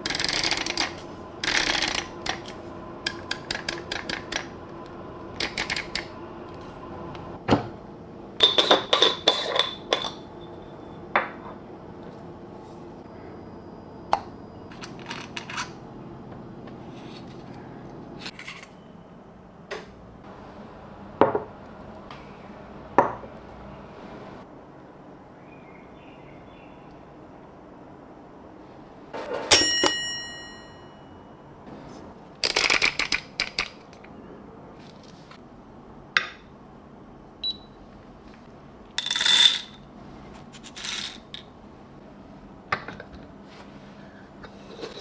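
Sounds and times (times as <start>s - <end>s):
metal grinder parts clinking: 8.4s - 10.2s, 39.0s - 39.8s, 40.6s - 41.4s.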